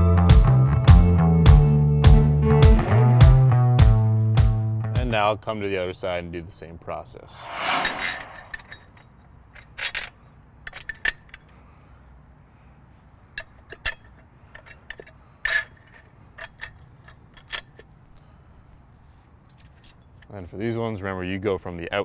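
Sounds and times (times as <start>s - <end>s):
metal bolts clinking: 9.6s - 11.6s, 13.4s - 20.3s.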